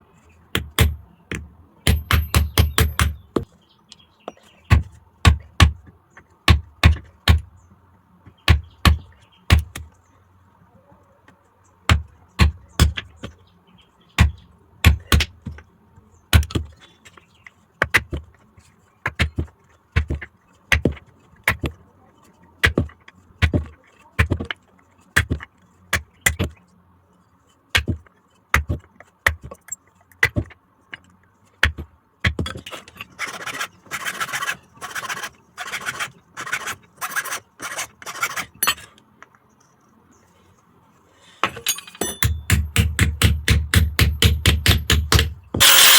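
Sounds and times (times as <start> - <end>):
hammer striking metal on anvil: 41.5 - 45.9.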